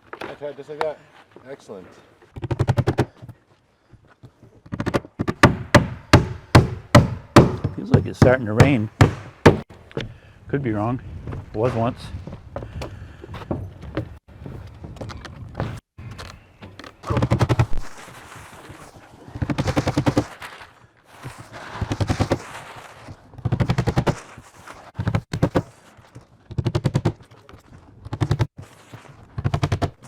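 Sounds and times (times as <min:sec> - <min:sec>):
power tool hammering: 0:05.3 - 0:09.7.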